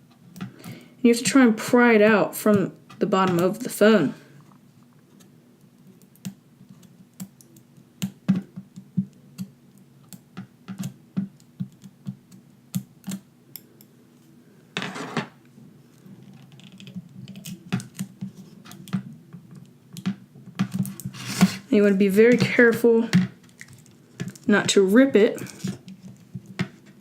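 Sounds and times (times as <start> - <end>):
scraping rustle: 20.9 - 22.0.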